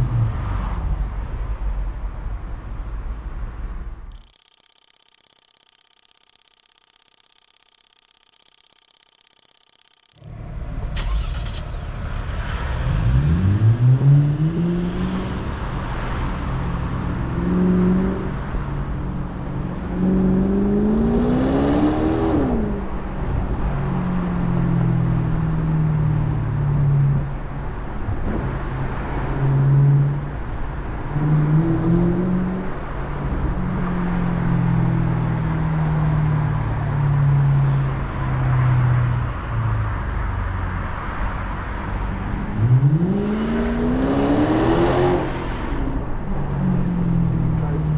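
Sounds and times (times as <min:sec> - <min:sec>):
car engine revving: 0:10.0 - 0:23.0, 0:42.0 - 0:47.8.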